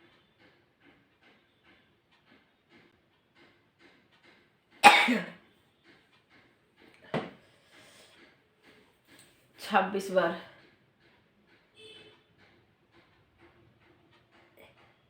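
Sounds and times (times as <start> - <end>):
person sneezing: 4.8 - 5.4.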